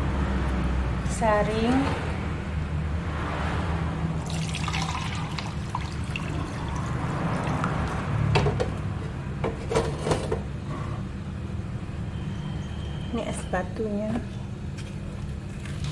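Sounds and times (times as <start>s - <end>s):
liquid pouring through strainer: 4.2s - 8.1s.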